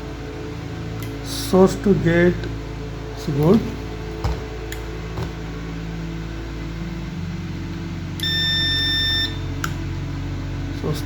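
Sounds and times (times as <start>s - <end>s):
steady low hum: 0.0s - 11.0s
multimeter continuity beep: 8.2s - 9.4s.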